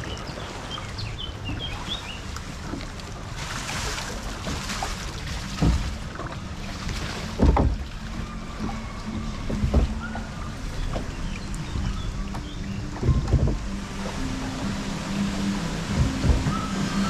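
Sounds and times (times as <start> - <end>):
water rushing and sloshing: 0.0 - 17.0
dull knocks: 4.3 - 17.0
bird chirps: 8.2 - 13.6.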